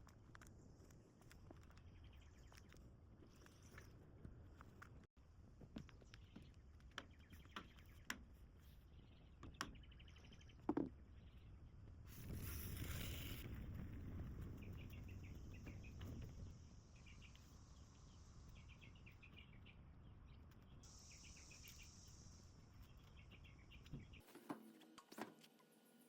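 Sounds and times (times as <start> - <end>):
high insect hiss: 20.8 - 22.8
insect chirps: 20.8 - 23.6.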